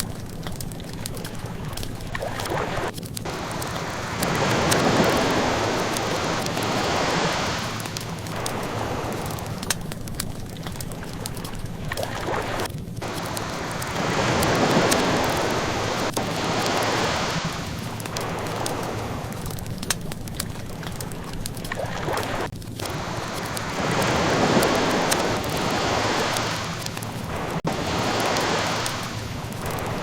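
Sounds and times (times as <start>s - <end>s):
ocean waves washing in: 0.0s - 30.0s
wood fire crackling: 0.0s - 30.0s.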